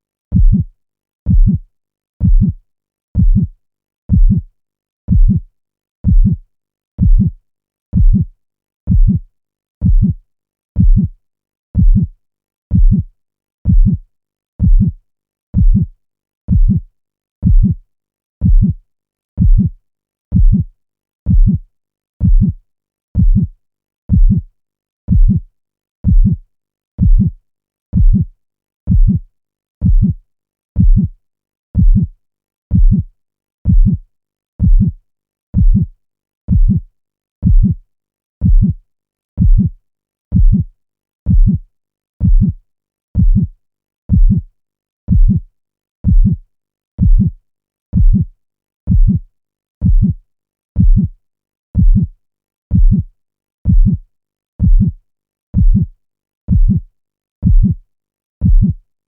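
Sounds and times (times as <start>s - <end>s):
heartbeat thuds: 0.3s - 0.7s, 1.3s - 1.6s, 2.2s - 2.6s, 3.2s - 3.5s, 4.1s - 4.4s, 5.1s - 5.4s, 6.0s - 6.4s, 7.0s - 7.3s, 8.0s - 8.2s, 8.9s - 9.2s, 9.8s - 10.2s, 10.8s - 11.1s, 11.8s - 12.1s, 12.7s - 13.0s, 13.7s - 14.0s, 14.6s - 15.0s, 15.6s - 15.9s, 16.5s - 16.8s, 17.4s - 17.8s, 18.4s - 18.8s, 19.4s - 19.7s, 20.3s - 20.6s, 21.3s - 21.6s, 22.2s - 22.6s, 23.2s - 23.5s, 24.1s - 24.4s, 25.1s - 25.4s, 26.0s - 26.4s, 27.0s - 27.3s, 28.0s - 28.2s, 28.9s - 29.2s, 29.8s - 30.2s, 30.8s - 31.1s, 31.8s - 32.1s, 32.7s - 33.1s, 33.7s - 34.0s, 34.6s - 35.0s, 35.6s - 35.9s, 36.5s - 36.8s, 37.4s - 37.8s, 38.4s - 38.7s, 39.4s - 39.7s, 40.3s - 40.6s, 41.3s - 41.6s, 42.2s - 42.6s, 43.2s - 43.5s, 44.1s - 44.4s, 45.1s - 45.4s, 46.0s - 46.4s, 47.0s - 47.3s, 48.0s - 48.2s, 48.9s - 49.2s, 49.8s - 50.1s, 50.8s - 51.1s, 51.8s - 52.1s, 52.7s - 53.0s, 53.7s - 54.0s, 54.6s - 54.9s, 55.6s - 55.8s, 56.5s - 56.8s, 57.4s - 57.8s, 58.4s - 58.7s.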